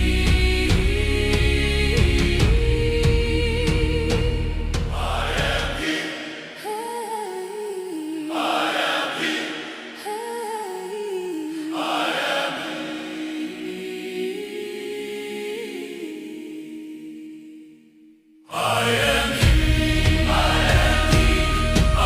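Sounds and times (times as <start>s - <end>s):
choir singing wordless melody: 0.0s - 22.0s.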